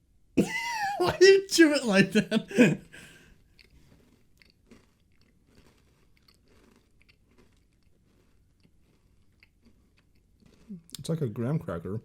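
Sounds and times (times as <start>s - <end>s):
person chewing crisp cookie: 2.8s - 11.1s.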